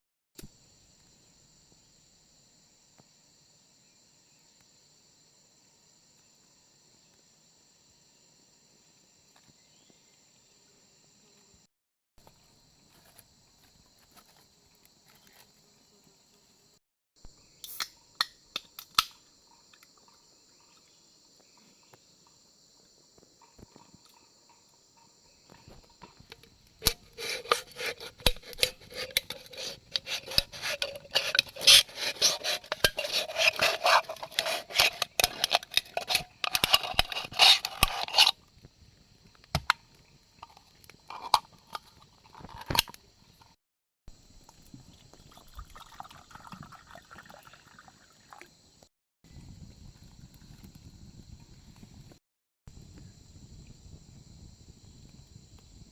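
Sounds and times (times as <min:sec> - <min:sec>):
insects chirring: 0:00.5 - 0:55.9
liquid pouring into container: 0:44.5 - 0:48.5.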